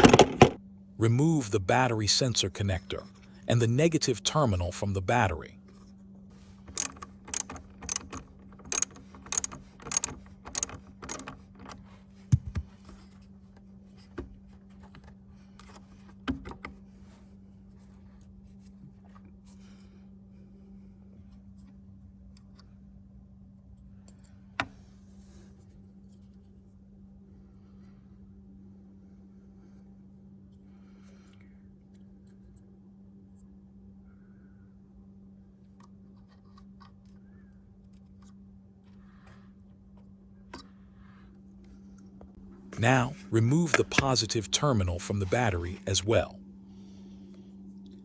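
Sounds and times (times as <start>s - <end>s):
knocks and clicks of parts: 0.0s - 0.6s, 6.7s - 12.8s
faint steady hum: 0.0s - 48.0s
ratchet wrench clicking: 6.7s - 11.8s.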